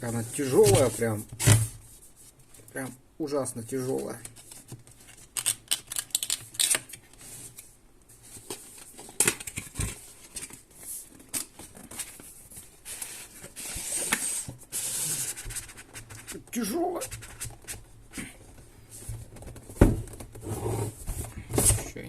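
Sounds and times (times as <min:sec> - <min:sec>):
cardboard rustling and scraping: 0:00.0 - 0:02.6, 0:07.2 - 0:22.0
cardboard sliding hiss: 0:12.7 - 0:15.8.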